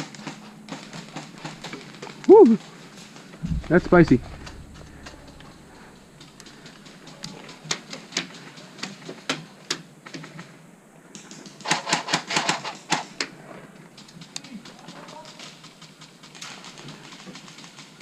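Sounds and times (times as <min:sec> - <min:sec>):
rapid burst of clicks: 0:03.1 - 0:09.3, 0:13.9 - 0:18.0.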